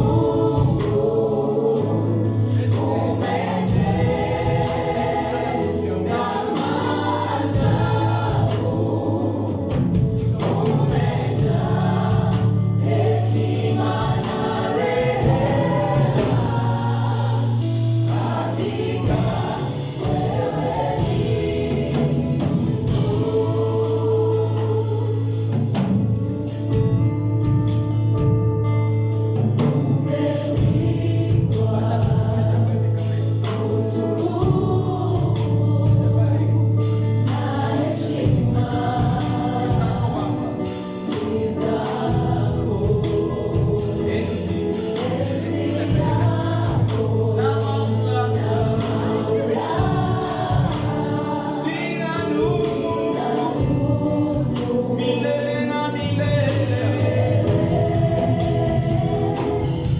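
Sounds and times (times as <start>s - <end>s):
choir singing gospel music: 0.0s - 59.9s.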